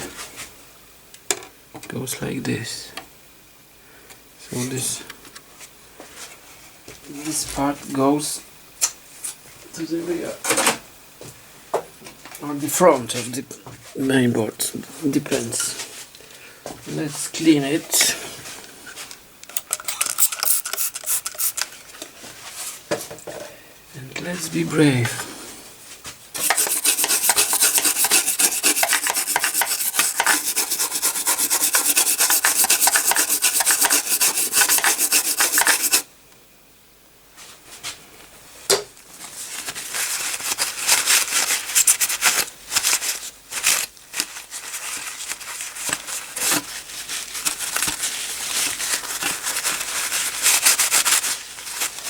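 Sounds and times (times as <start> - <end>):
scrubbing and scraping strokes: 20.4 - 21.6, 26.4 - 36.0.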